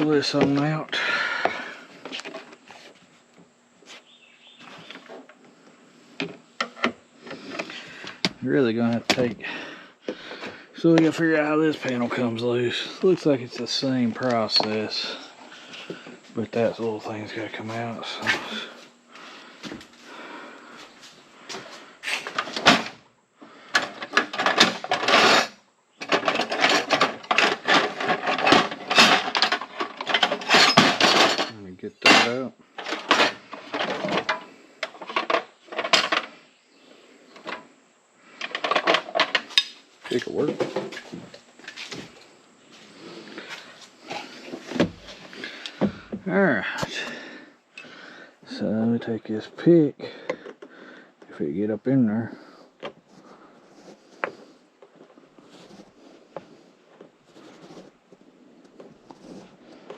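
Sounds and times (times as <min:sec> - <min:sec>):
soft rustling: 0:52.4 - 0:59.9.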